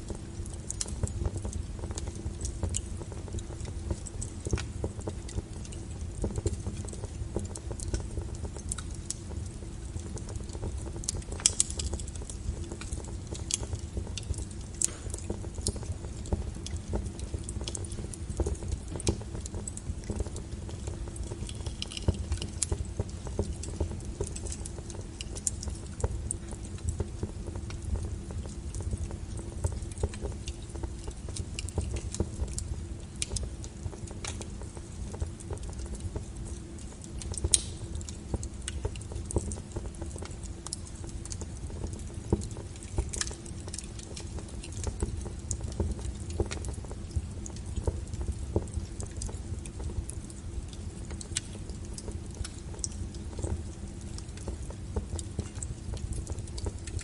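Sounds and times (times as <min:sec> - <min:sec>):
fire crackling and popping: 0:00.0 - 0:57.0
low rumble of flames: 0:00.0 - 0:57.0.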